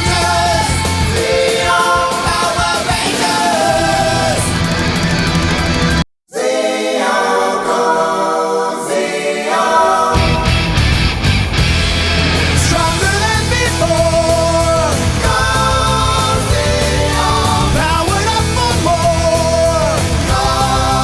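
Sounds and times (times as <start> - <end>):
rock music with sung vocals: 0.0 - 6.0, 9.9 - 21.0.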